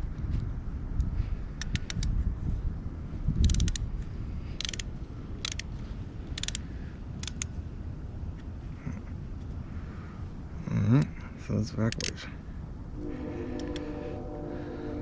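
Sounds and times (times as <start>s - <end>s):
ratchet wrench clicking: 1.6s - 2.1s, 3.4s - 3.9s, 4.6s - 5.7s, 6.3s - 6.6s, 7.2s - 7.5s, 11.9s - 12.2s.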